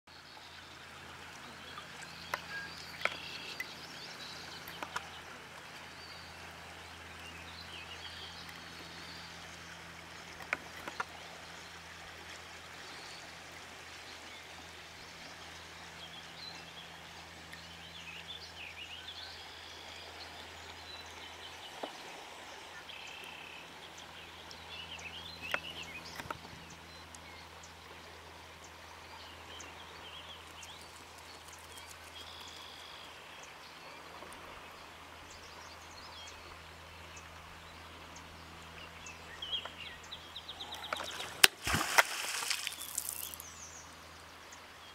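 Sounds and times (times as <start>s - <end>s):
running water: 0.1s - 44.9s
birds chirping: 1.4s - 9.6s, 17.6s - 27.7s, 29.1s - 44.0s.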